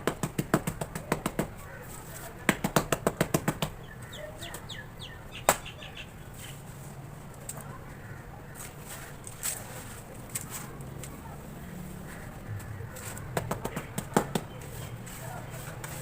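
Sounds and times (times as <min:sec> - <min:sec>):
tapping on hardened cement: 0:00.0 - 0:03.8, 0:12.9 - 0:16.0.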